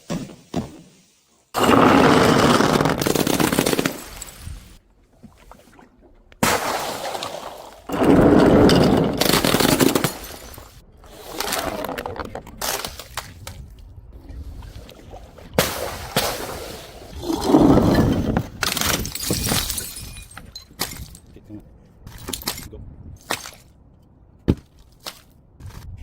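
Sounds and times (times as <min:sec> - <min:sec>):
glass bottles smashing: 0:06.5 - 0:10.8, 0:17.9 - 0:21.3.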